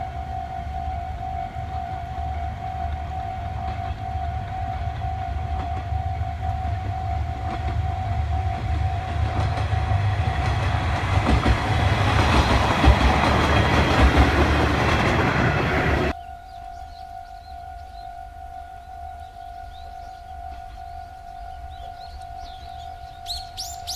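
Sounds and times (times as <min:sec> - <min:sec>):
train rumble and wheel clatter: 0:00.0 - 0:16.2
level crossing alarm ringing: 0:00.0 - 0:23.9.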